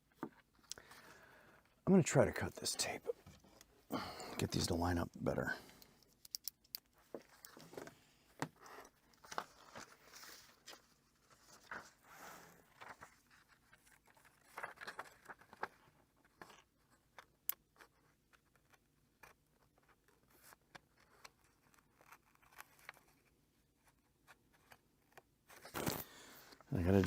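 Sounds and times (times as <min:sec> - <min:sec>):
small clicks and taps: 0:05.1 - 0:09.4
book pages rustling: 0:06.9 - 0:27.0.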